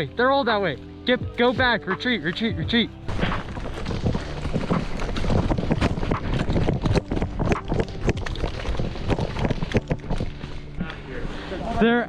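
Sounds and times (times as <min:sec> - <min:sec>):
running footfalls: 0:03.0 - 0:11.1
wind rumbling on microphone: 0:03.1 - 0:10.9.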